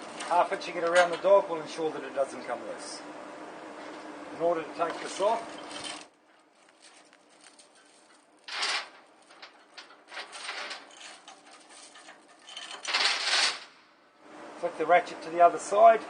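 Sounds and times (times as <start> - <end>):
chain clicking and rattling: 5.2 - 6.1, 6.8 - 13.7.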